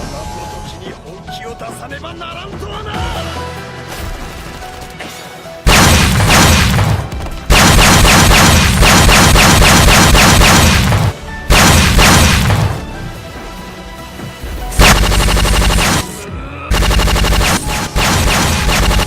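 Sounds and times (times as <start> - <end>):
background music: 0.0 - 19.0
rapid punch sound effects: 5.7 - 12.9, 14.8 - 19.0.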